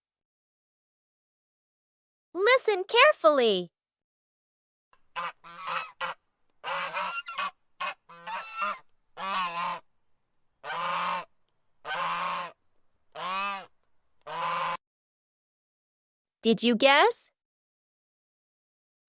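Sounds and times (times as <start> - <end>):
goose honking: 5.0 - 9.8, 10.6 - 14.8.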